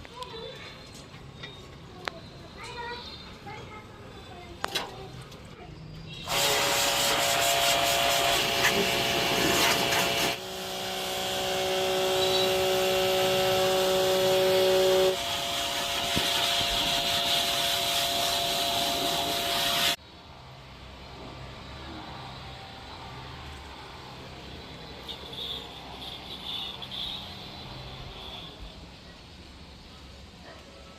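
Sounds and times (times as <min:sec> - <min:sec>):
pressure washer motor whine: 0:06.2 - 0:20.0
water jet hissing: 0:06.2 - 0:20.0.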